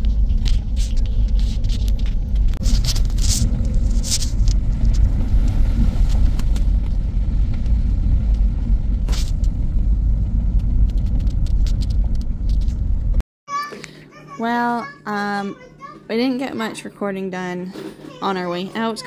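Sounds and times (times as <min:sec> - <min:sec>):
low road rumble: 0:00.0 - 0:13.2.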